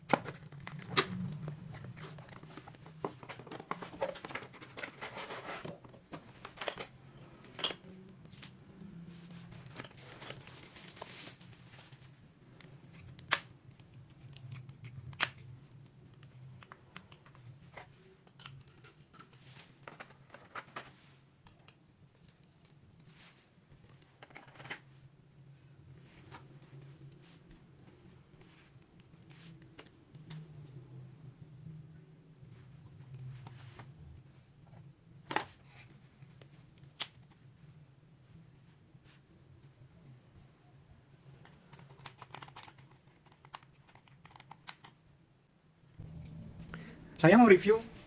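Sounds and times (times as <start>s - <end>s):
packaging rustling and tearing: 9.5s - 12.0s, 41.7s - 45.0s
low steady hum: 45.0s - 48.0s.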